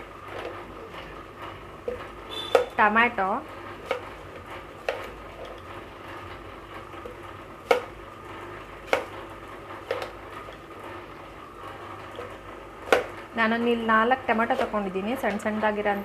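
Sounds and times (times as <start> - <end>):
sharp knocks of kitchen items: 1.9 - 2.8.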